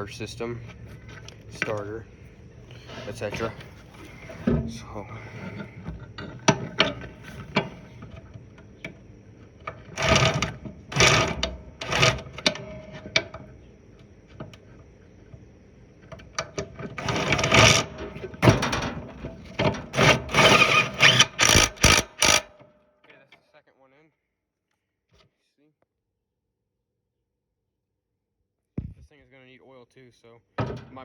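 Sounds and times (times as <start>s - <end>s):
short rattling bursts: 9.9s - 12.9s, 17.0s - 22.5s
tool clicks and knocks: 16.1s - 22.6s.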